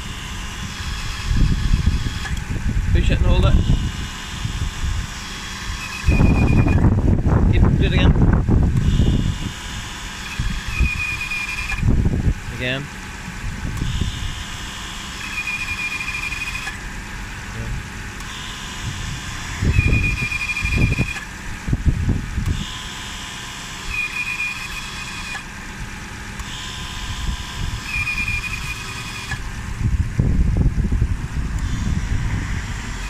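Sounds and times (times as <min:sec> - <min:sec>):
car engine idling: 0:00.0 - 0:33.0
high-pitched brake squeal: 0:03.4 - 0:06.9, 0:08.8 - 0:11.8, 0:13.9 - 0:16.8, 0:18.3 - 0:21.2, 0:22.8 - 0:25.4, 0:26.5 - 0:29.4.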